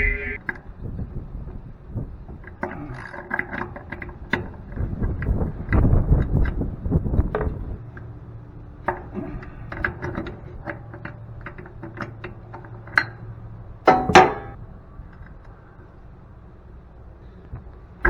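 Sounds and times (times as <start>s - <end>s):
loud metal clanks: 13.8s - 14.6s
metal parts and tools clinking: 13.9s - 14.6s.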